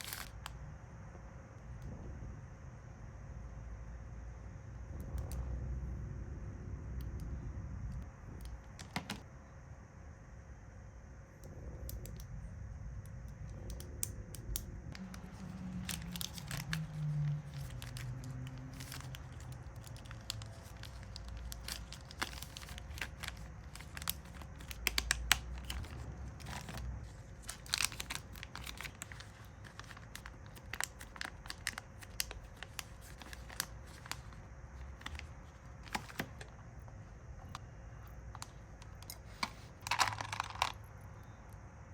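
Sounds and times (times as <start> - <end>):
plastic packaging crinkling: 0.0 - 0.4, 14.9 - 36.6, 38.3 - 40.9
faint steady hum: 0.0 - 41.9.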